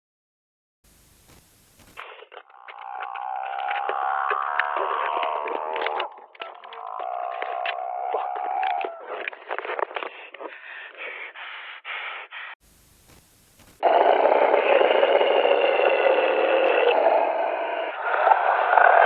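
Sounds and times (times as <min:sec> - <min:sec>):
faint hiss: 0:00.9 - 0:02.3, 0:12.4 - 0:13.8
choppy radio transmission: 0:00.9 - 0:03.1, 0:08.1 - 0:10.6
loud static crackle: 0:00.9 - 0:06.0, 0:12.7 - 0:18.3.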